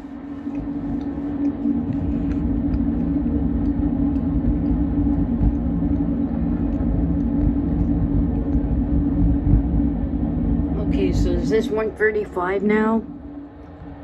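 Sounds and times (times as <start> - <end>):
constant hum: 0.0 - 14.0.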